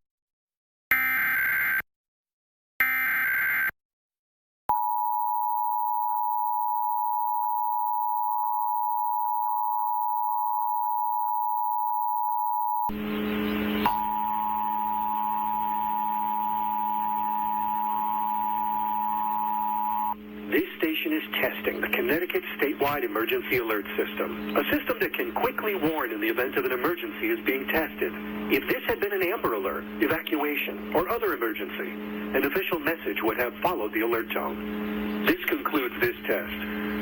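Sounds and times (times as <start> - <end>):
data bursts: 12.9 - 37.0
low hum and hiss: 12.9 - 37.0.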